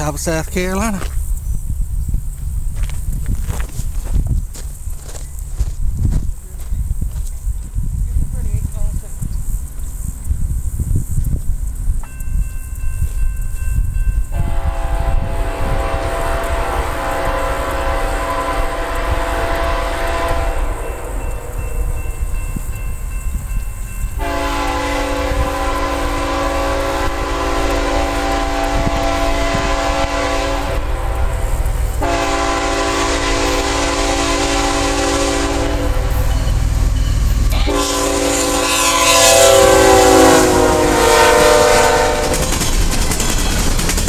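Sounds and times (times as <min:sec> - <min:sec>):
locomotive low rumble: 0:00.0 - 0:44.0
locomotive air horn blasts: 0:14.3 - 0:21.9, 0:24.2 - 0:36.2, 0:37.5 - 0:42.5.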